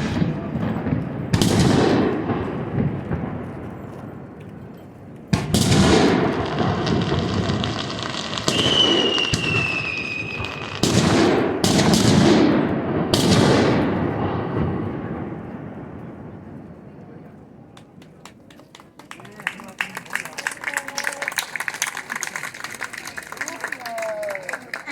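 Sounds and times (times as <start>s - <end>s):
fireworks bangs with echo: 0.0s - 17.3s
fireworks crackle: 5.4s - 12.5s.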